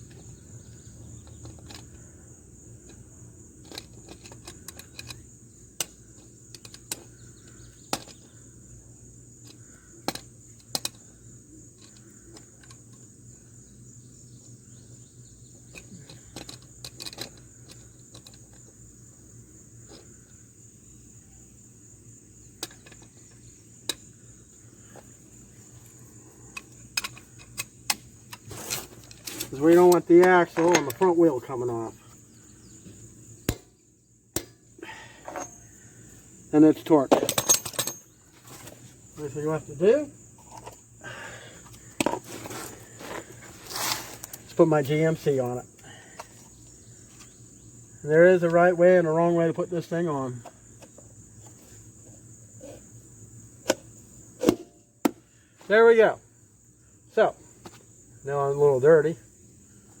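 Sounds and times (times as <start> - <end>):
insects chirring: 0.0 - 60.0.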